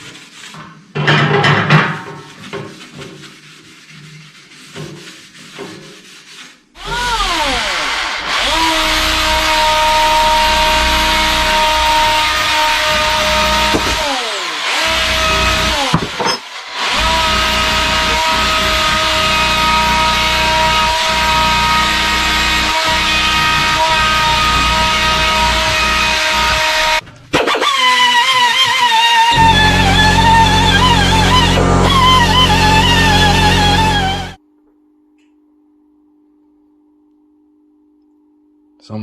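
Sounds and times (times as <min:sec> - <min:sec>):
electric power tool spinning: 0:06.8 - 0:34.4.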